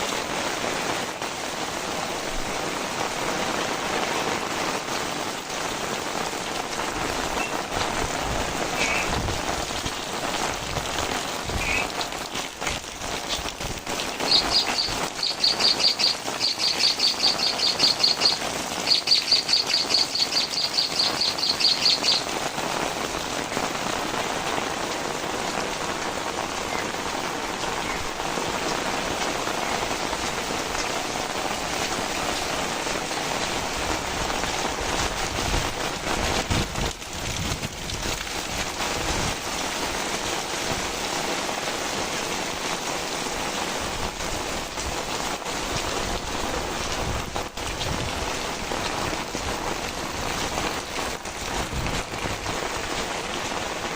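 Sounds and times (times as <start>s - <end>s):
heavy rain: 0.0s - 53.9s
bird high-pitched trill: 14.3s - 22.2s.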